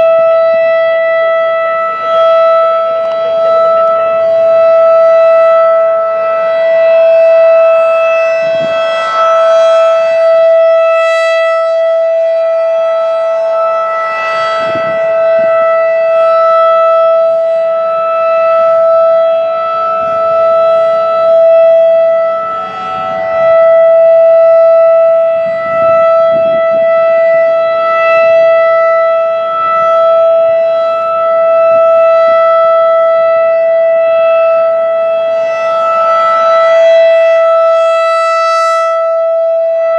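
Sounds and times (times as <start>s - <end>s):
rotating warning siren: 0.0s - 39.9s.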